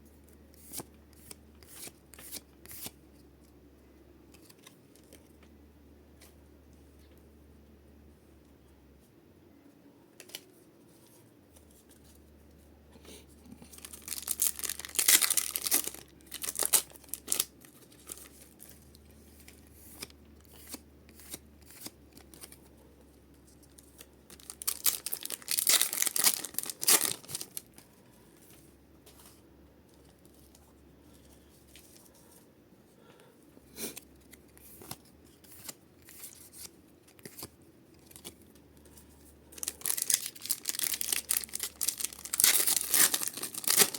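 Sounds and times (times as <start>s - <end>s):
wrapper rustles and clicks: 13.6s - 20.1s, 23.8s - 27.8s, 39.6s - 43.9s
wrappers tearing and crinkling: 13.7s - 18.9s, 24.3s - 27.8s, 39.6s - 43.9s.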